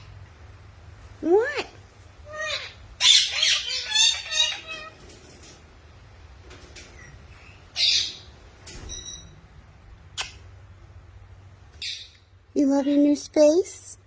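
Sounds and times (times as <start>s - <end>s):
parrot squawking: 2.2s - 5.0s, 7.7s - 8.3s, 11.8s - 12.2s.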